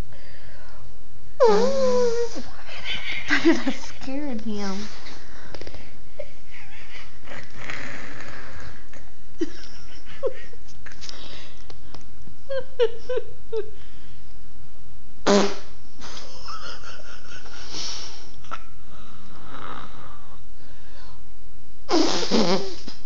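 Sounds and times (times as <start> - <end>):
person making fake fart noises: 1.4 - 2.4, 7.2 - 9.1, 15.2 - 15.8, 21.9 - 23.0.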